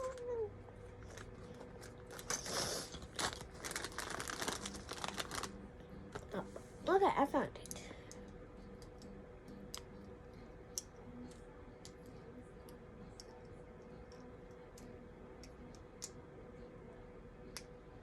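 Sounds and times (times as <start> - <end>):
low hum: 3.0 - 18.0.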